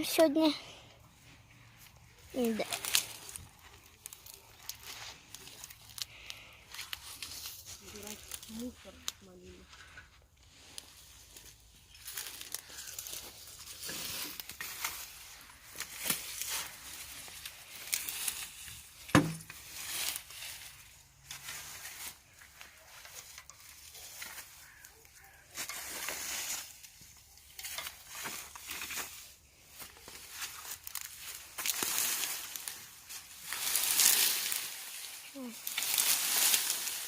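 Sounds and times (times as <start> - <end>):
rustling and crinkling: 0.0 - 37.0.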